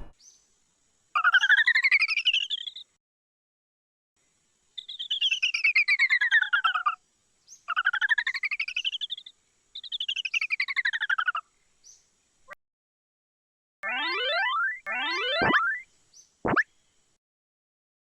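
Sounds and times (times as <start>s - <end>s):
pulsing chirpy electronic sweep: 13.8s - 15.8s.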